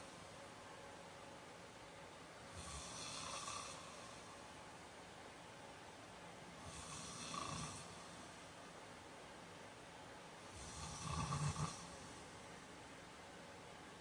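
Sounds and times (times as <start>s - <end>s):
man snoring: 2.6s - 4.0s, 6.7s - 8.0s, 10.6s - 11.9s.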